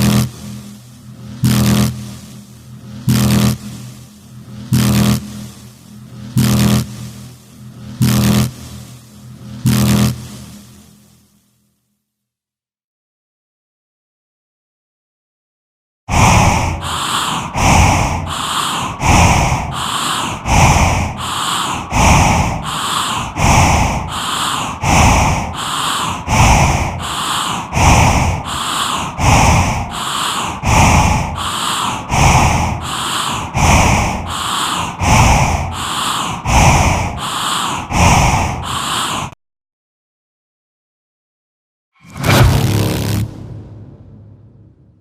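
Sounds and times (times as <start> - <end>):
heavy rhythmic breathing: 0.0 - 11.5, 16.1 - 39.4.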